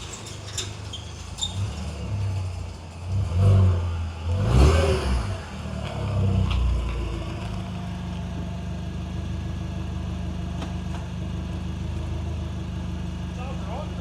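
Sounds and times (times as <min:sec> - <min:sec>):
car engine running through exhaust: 0:00.0 - 0:14.0
car engine revving: 0:01.6 - 0:09.8.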